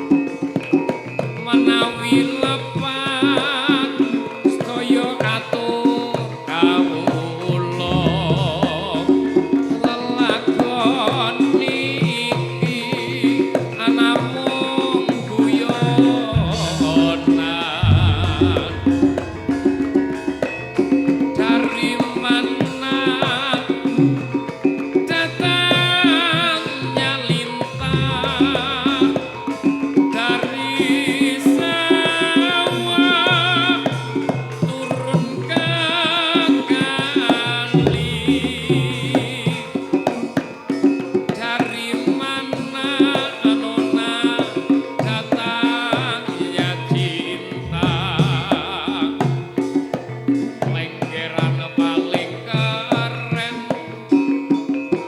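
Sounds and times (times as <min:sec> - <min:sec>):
hand drum strokes: 0:00.0 - 0:55.0
metallophones playing: 0:16.1 - 0:24.2, 0:27.7 - 0:30.1, 0:37.7 - 0:39.9, 0:47.6 - 0:50.2
high wavering melody line: 0:16.3 - 0:23.8, 0:37.8 - 0:39.9.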